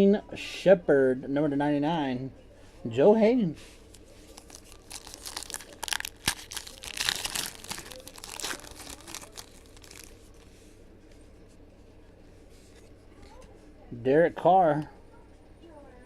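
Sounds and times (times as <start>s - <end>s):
plastic wrapper tearing and crinkling: 3.9s - 10.5s.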